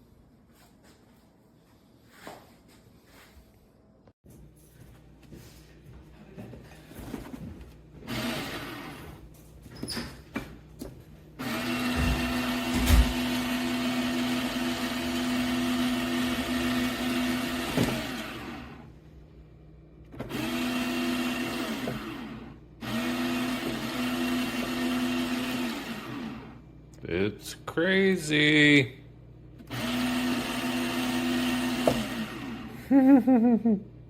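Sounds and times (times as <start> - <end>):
coffee grinder motor: 8.1 - 9.2, 11.4 - 18.9, 20.2 - 26.6, 29.6 - 32.8.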